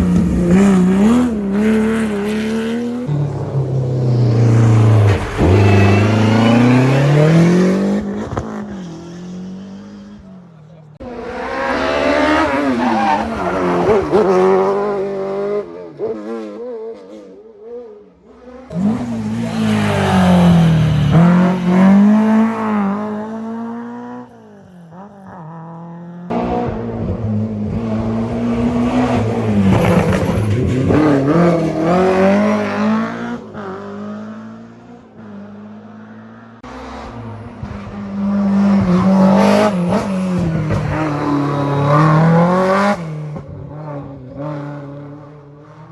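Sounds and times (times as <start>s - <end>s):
rally car engines at full throttle: 0.0s - 45.9s.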